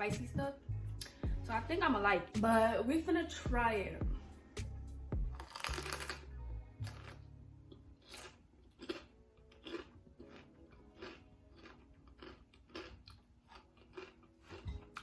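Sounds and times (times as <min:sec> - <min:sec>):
person chewing crunchy food: 0:05.3 - 0:15.0
faint crisp crunches: 0:05.4 - 0:06.2.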